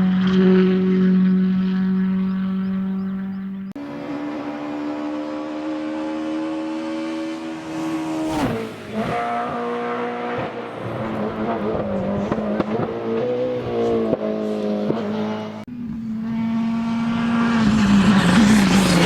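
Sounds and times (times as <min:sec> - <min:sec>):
rally car engine revving: 0:00.0 - 0:19.0.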